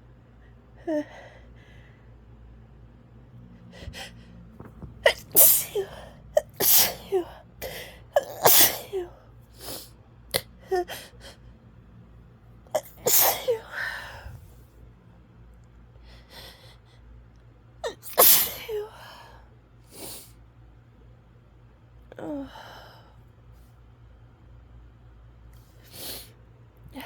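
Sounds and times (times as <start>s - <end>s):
woman sneezing: 5.0s - 7.4s, 8.2s - 9.2s, 12.8s - 14.3s, 17.9s - 19.0s.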